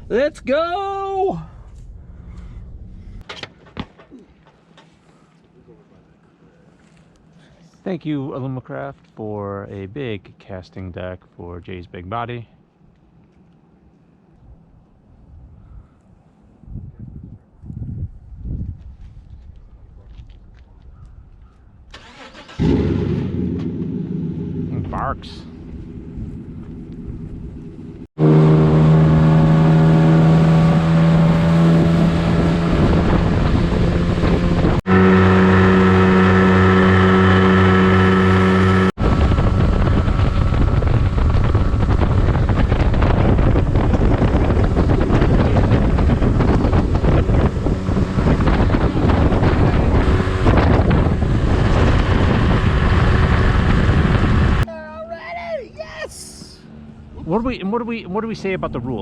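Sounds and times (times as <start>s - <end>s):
wind rushing on microphone: 16.6s - 21.9s, 31.2s - 34.8s, 38.5s - 54.7s
outboard motor running: 28.2s - 54.6s.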